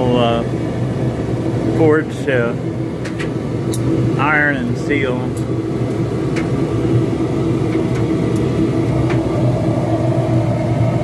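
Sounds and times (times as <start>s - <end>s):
propane burner roaring: 0.0s - 11.0s
hairdryer blower humming: 5.8s - 11.0s.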